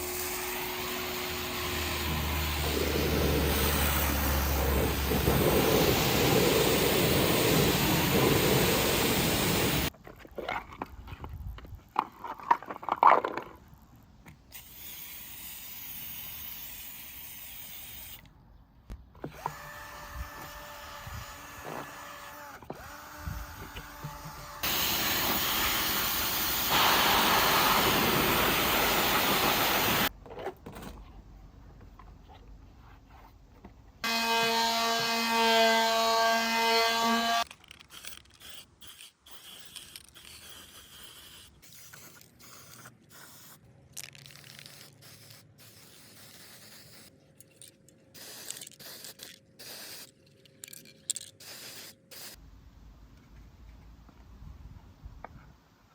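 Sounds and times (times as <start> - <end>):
power tool whine: 0.0 - 9.9, 19.3 - 30.0, 34.0 - 37.5
power tools running: 0.1 - 6.2, 34.0 - 37.5.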